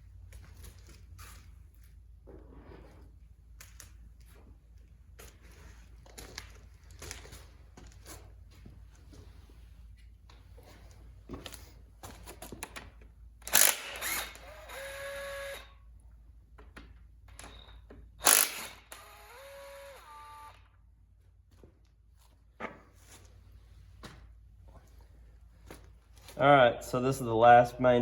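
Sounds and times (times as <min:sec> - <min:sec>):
power tool motor whine: 0:13.4 - 0:15.7, 0:18.2 - 0:20.7.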